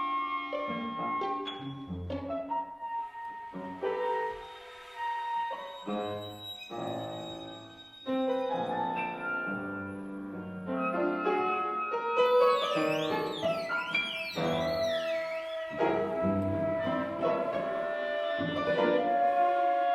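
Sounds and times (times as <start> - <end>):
piano chords: 0.0 - 19.9
high sliding tones: 3.2 - 9.9, 12.2 - 17.2
chamber ensemble playing: 12.2 - 19.0.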